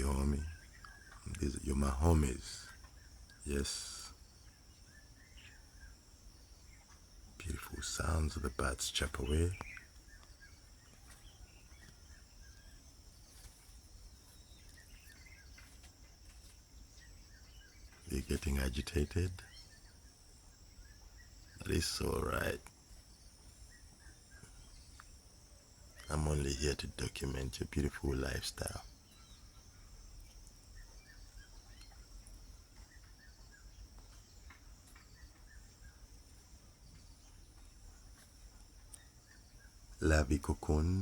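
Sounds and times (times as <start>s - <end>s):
bird chirps: 0.0s - 41.0s
high insect drone: 0.0s - 41.0s.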